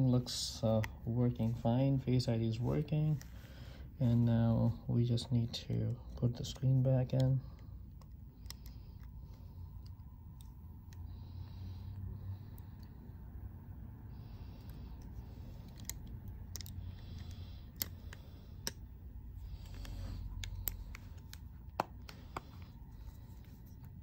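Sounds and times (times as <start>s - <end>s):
light scraping of phone display: 19.4s - 24.0s.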